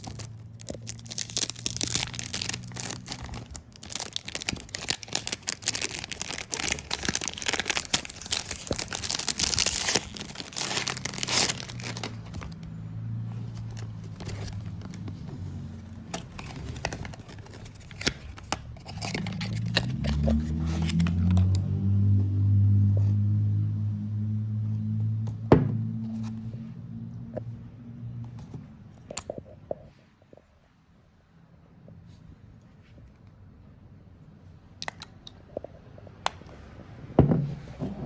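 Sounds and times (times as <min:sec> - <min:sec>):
cardboard box handling rustles: 0:00.0 - 0:12.6, 0:13.2 - 0:21.3
cellophane tearing and crinkling: 0:00.0 - 0:12.6, 0:13.4 - 0:21.3.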